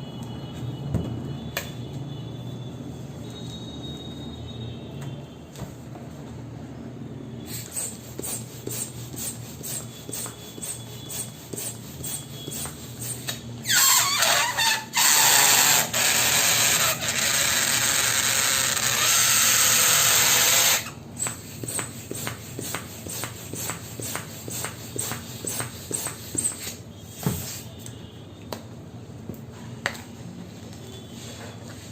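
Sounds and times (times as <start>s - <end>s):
electric balloon pump blowing: 7.5s - 27.6s.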